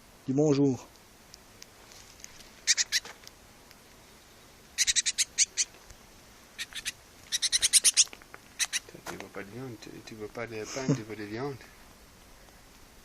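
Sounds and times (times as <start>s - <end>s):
fledgling bird chirping: 2.6s - 9.0s.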